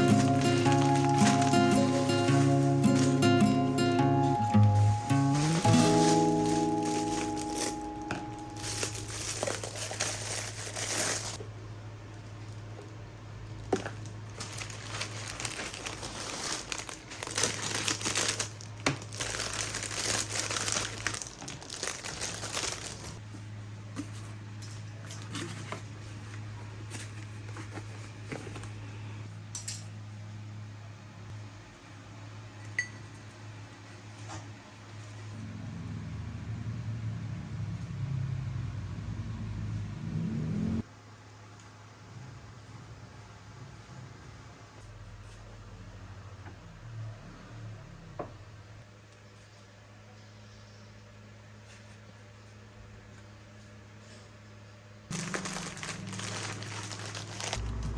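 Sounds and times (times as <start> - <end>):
packaging crinkling and tearing: 0.0 - 3.6, 4.6 - 11.4, 13.5 - 23.2, 55.1 - 57.9.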